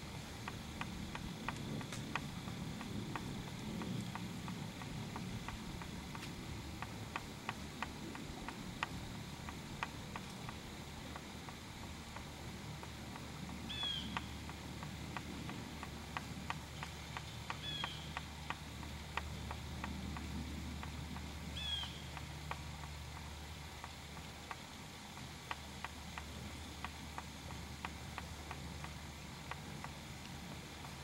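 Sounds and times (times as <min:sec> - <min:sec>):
light irregular ticks: 0:00.0 - 0:31.0
bird calling: 0:13.6 - 0:14.4, 0:16.8 - 0:18.2, 0:21.5 - 0:22.1.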